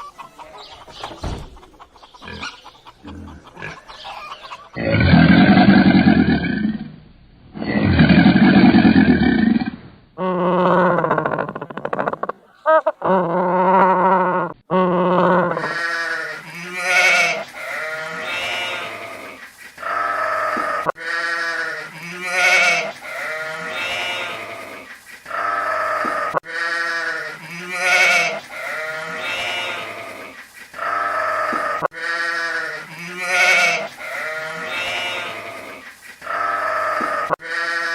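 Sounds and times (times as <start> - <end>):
farm animal bleating: 15.1 - 37.9.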